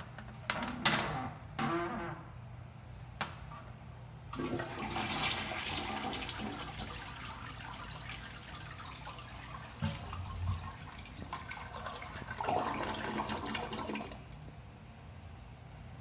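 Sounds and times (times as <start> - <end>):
water rushing through toilet: 4.4 - 14.4.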